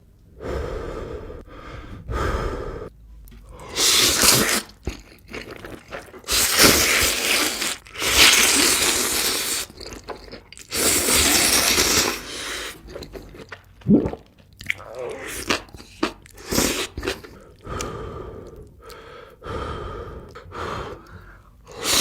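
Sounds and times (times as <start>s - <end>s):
chewing and crunching: 3.3s - 17.6s.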